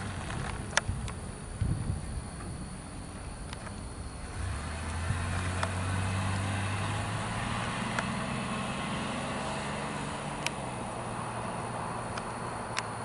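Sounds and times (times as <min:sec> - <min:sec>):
vehicle engine humming: 0:00.0 - 0:13.0
faint sharp ticks: 0:04.8 - 0:05.8, 0:07.9 - 0:08.1, 0:10.4 - 0:10.6, 0:12.1 - 0:13.0.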